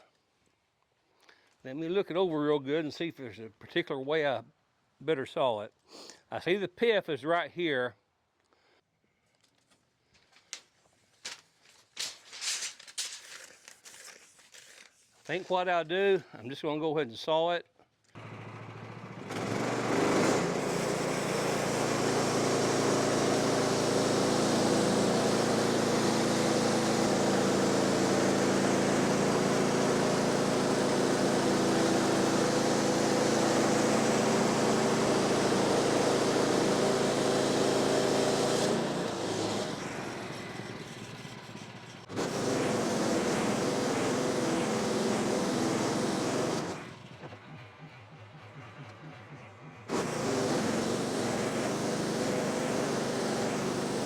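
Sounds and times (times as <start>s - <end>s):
bandsaw sawmill cutting log: 18.2s - 47.6s, 48.7s - 54.0s.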